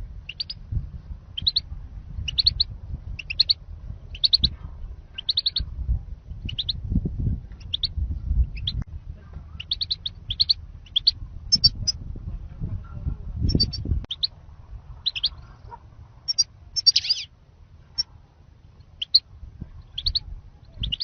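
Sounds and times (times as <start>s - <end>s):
low rumble: 0.0s - 21.0s
goldfinch chirps: 0.3s - 0.6s, 1.4s - 1.6s, 2.3s - 4.5s, 5.2s - 5.6s, 9.6s - 12.0s, 15.0s - 15.4s, 16.3s - 17.3s, 19.0s - 19.2s, 19.8s - 21.0s.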